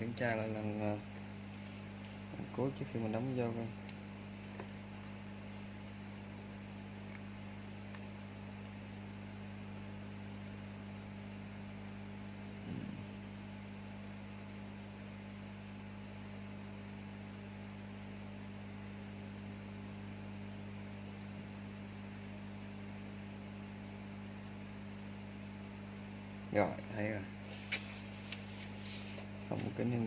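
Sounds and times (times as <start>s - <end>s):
electrical mains hum: 0.0s - 30.0s
faint hiss: 26.6s - 30.0s.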